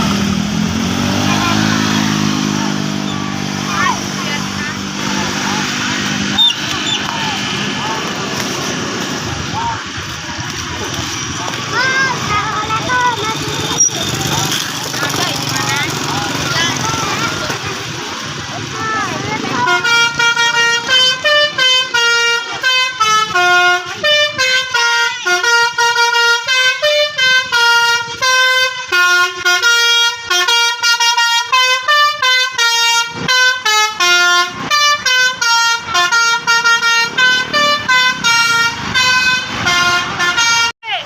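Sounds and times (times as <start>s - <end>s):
musical air horn tune: 19.6s - 40.8s.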